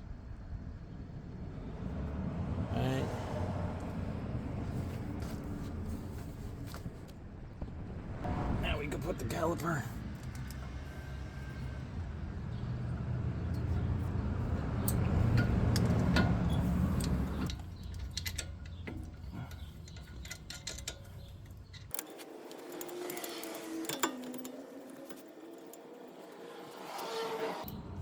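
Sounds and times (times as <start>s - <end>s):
low rumble: 0.0s - 12.5s
metal tools clinking: 14.8s - 26.4s.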